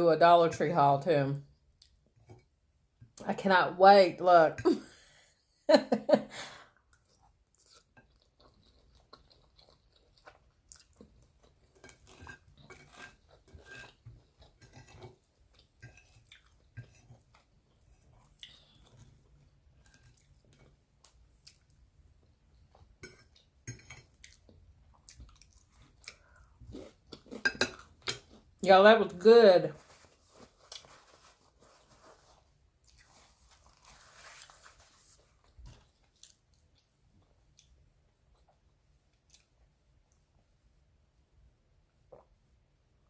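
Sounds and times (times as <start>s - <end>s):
person chewing food: 6.8s - 28.6s, 29.8s - 40.2s.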